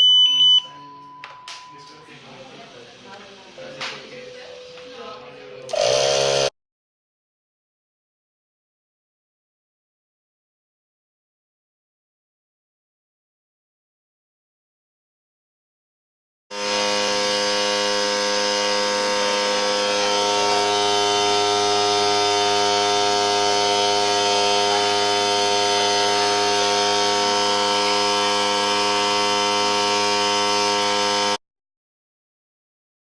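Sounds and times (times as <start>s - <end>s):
electric fan running: 2.0s - 6.5s, 16.5s - 31.4s.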